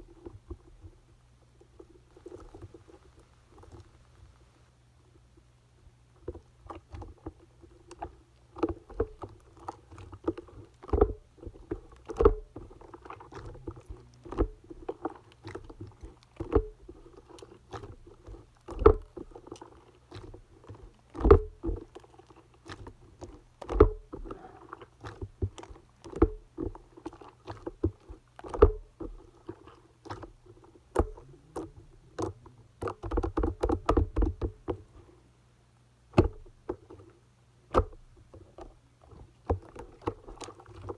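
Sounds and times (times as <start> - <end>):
slime squishing with sticky pops: 7.9 - 34.9.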